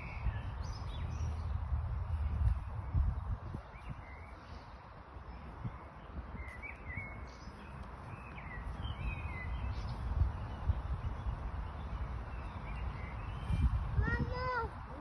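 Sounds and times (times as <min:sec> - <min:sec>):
steady low rumble: 0:00.0 - 0:04.7
small birds chirping: 0:00.0 - 0:15.0.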